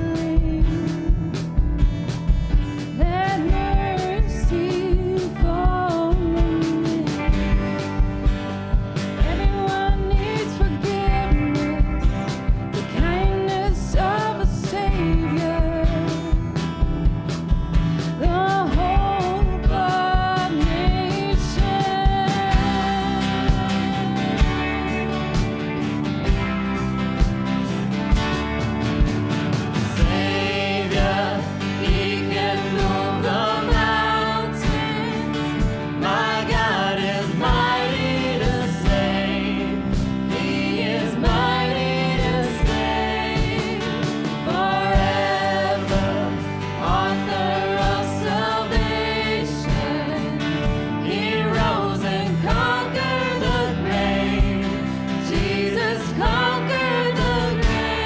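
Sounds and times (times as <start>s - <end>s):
person singing: 0.0s - 1.3s, 3.0s - 7.4s, 9.2s - 16.5s
band with drum beat: 0.0s - 58.0s.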